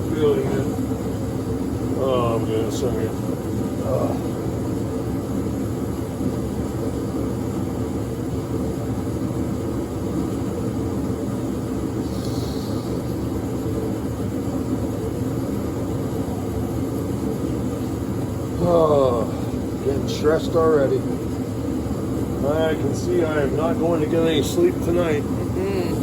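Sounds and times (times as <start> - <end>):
steady mechanical rumble: 0.0 - 26.0
faint hiss: 12.0 - 13.0.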